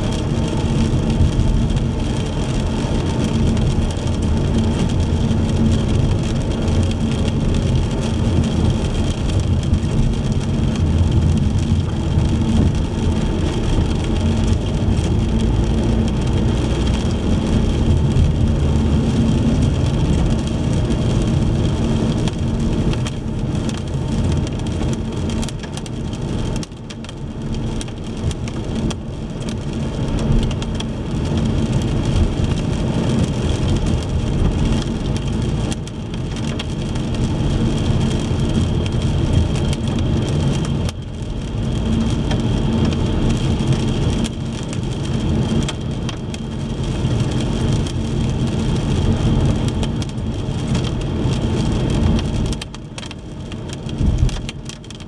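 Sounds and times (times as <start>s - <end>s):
rain hissing: 0.0s - 27.0s
car engine and tyres on wet road: 0.0s - 55.0s.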